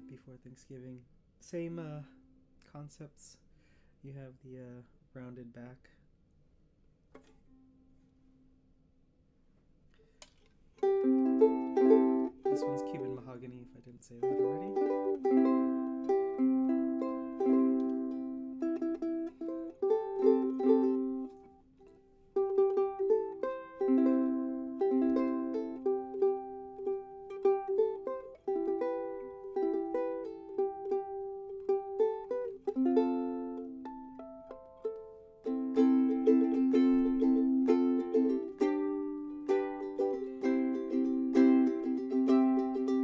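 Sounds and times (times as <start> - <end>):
ukulele playing: 10.3 - 43.0.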